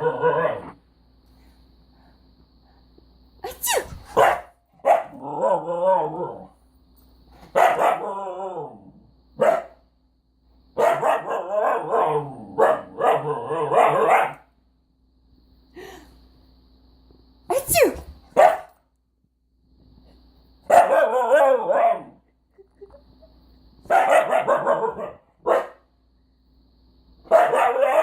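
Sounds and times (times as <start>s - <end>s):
dog barking angrily: 4.0s - 6.4s, 7.5s - 8.2s, 9.4s - 9.8s, 10.8s - 14.4s, 18.4s - 18.7s, 20.7s - 22.2s, 23.9s - 25.8s, 27.3s - 28.0s
person sneezing: 17.5s - 18.1s.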